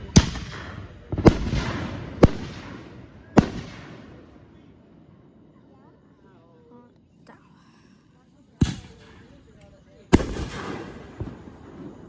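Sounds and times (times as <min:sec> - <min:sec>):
fireworks bangs: 0:00.0 - 0:04.4, 0:08.6 - 0:12.0.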